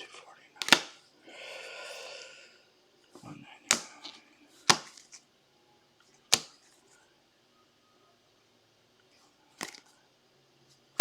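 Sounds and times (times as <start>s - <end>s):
trading cards clacking on table: 0.6s - 1.0s, 3.7s - 5.2s, 6.3s - 6.7s, 9.6s - 9.9s.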